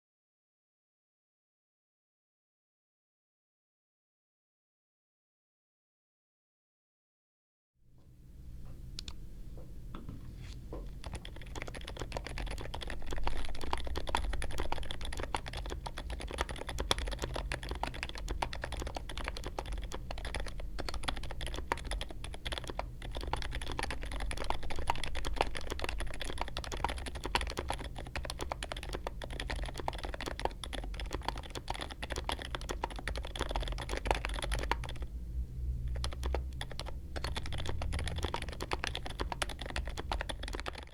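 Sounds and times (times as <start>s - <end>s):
typing on mechanical keyboard: 10.9s - 35.1s, 35.9s - 40.9s.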